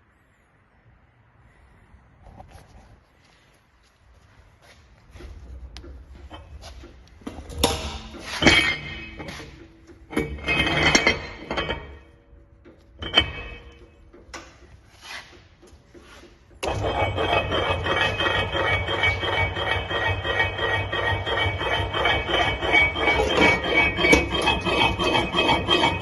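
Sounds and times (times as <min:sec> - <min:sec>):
metal clanks and clinks: 0:06.0 - 0:14.7.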